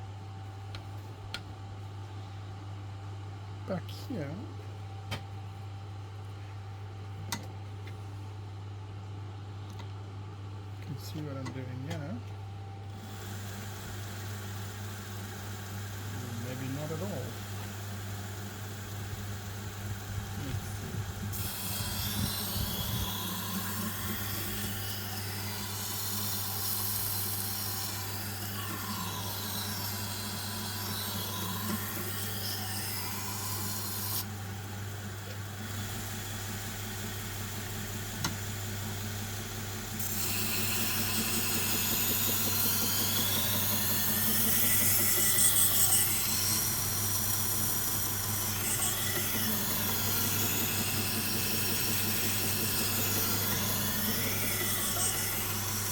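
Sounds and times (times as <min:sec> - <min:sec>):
belt grinder motor humming: 0:13.0 - 0:55.9.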